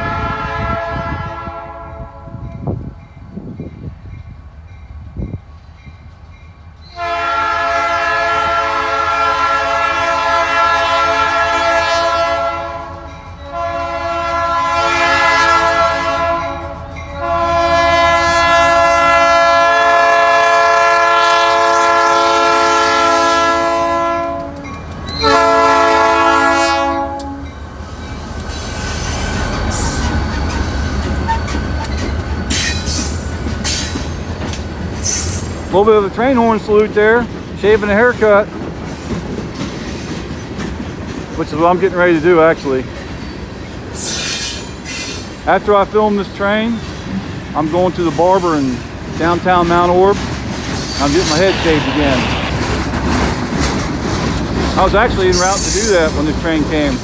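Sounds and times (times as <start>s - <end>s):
locomotive air horn blasts: 0.0s - 2.7s, 6.9s - 27.5s
train rumbling past: 0.0s - 57.0s
wheels clattering on rail: 23.8s - 57.0s.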